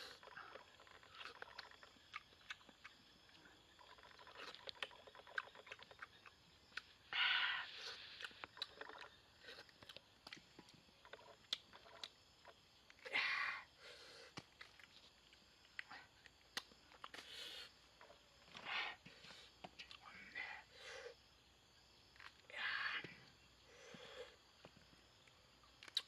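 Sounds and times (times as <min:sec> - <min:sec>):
person chewing fruit: 0:00.0 - 0:07.1, 0:07.7 - 0:13.1, 0:14.2 - 0:18.6, 0:22.2 - 0:22.5, 0:25.1 - 0:26.0
crunching bites: 0:25.7 - 0:26.0.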